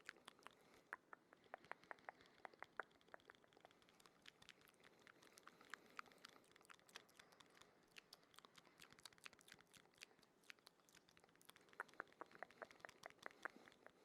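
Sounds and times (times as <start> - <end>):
wet mouth clicks and smacks: 0.0 - 14.0.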